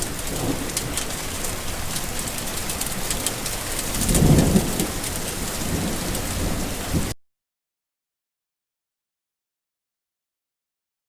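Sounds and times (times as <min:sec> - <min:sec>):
raindrop ticks: 0:00.0 - 0:06.4
steady rain hiss: 0:00.0 - 0:07.1.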